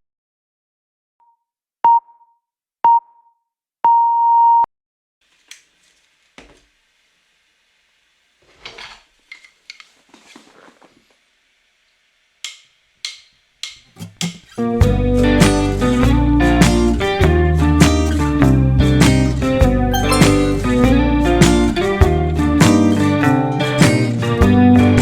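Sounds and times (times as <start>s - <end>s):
electronic timer beeps: 20.0s - 20.8s.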